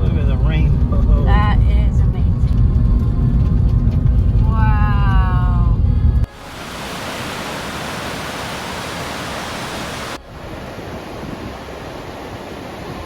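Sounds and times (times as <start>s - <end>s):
waterfall roaring: 6.3s - 10.2s.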